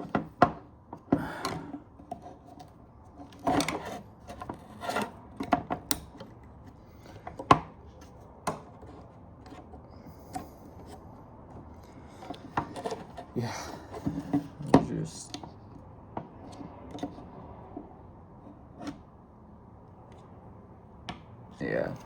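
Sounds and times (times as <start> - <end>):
metal latch scraping and rubbing: 1.4 - 15.4.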